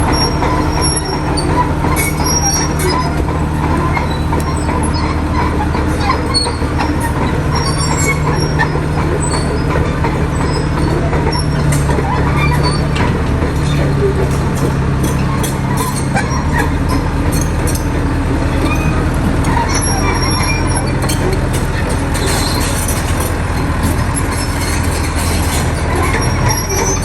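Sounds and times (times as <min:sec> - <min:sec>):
diesel engine running: 0:00.0 - 0:27.0
steel tracks clanking and squealing: 0:00.0 - 0:27.0.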